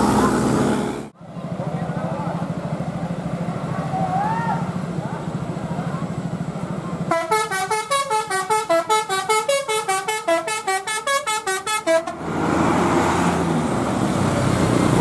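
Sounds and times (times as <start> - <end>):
bus horn playing tune: 7.1 - 12.3.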